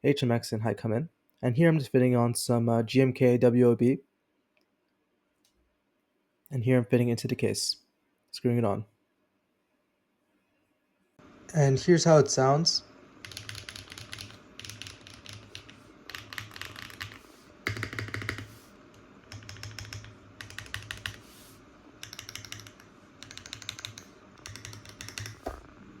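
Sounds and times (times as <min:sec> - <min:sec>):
mechanical keyboard typing: 0:13.2 - 0:18.6, 0:19.2 - 0:21.3, 0:22.0 - 0:25.7.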